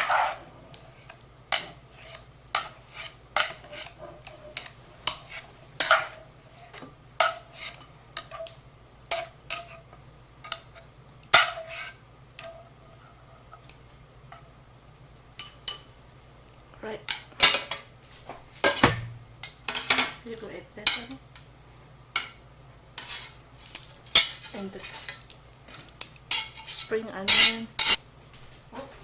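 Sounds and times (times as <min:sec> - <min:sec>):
utensils clinking against pot: 0:23.0 - 0:28.0.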